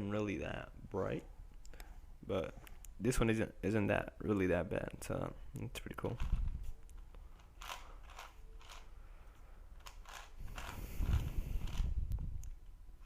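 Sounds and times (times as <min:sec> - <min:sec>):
puzzle cube clacking and rubbing: 0:06.0 - 0:09.0, 0:09.7 - 0:12.4
plastic puzzle cube clicking: 0:06.1 - 0:08.9, 0:09.8 - 0:12.6.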